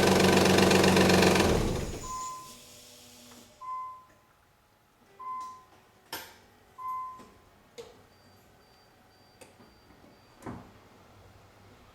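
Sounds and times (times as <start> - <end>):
faint high-pitched beep: 2.0 - 2.6, 3.6 - 4.3, 5.2 - 5.8, 6.8 - 7.4, 8.1 - 10.4
short electronic beeps: 2.0 - 2.6.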